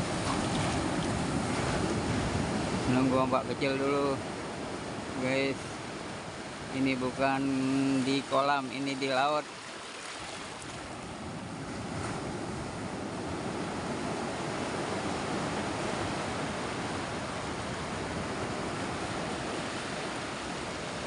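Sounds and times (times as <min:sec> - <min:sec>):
sea waves and surf: 0:00.0 - 0:21.0.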